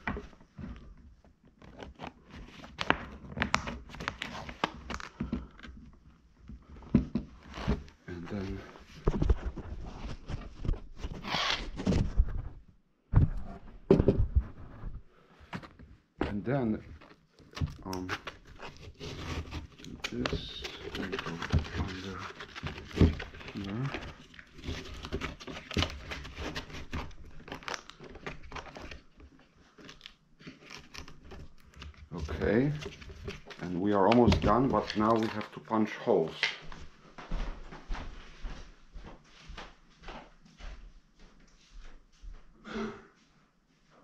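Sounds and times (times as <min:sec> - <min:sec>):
sandpaper crinkling and rustling: 0:18.8 - 0:23.9.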